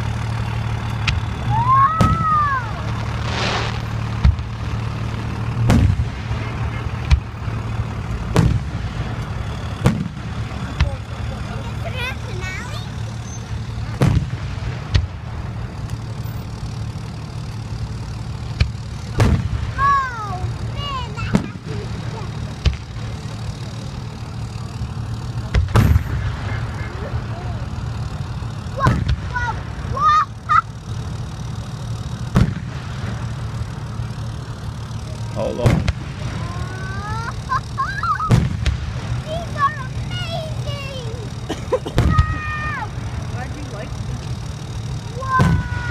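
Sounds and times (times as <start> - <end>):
low rumble: 0.0 - 30.1
fireworks bursting: 0.0 - 45.9
high wavering cries: 1.4 - 2.9, 39.4 - 43.0.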